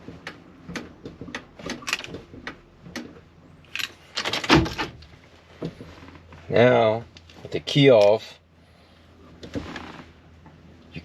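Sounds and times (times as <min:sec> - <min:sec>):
gear shifter clicks and clunks: 0:00.0 - 0:06.4.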